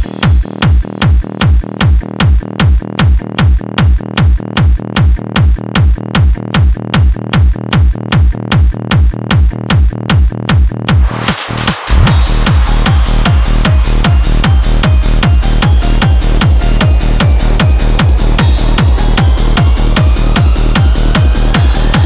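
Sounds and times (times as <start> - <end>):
four-on-the-floor kick drum: 0.0 - 22.0
noisy synth riser sweeping: 11.0 - 22.0.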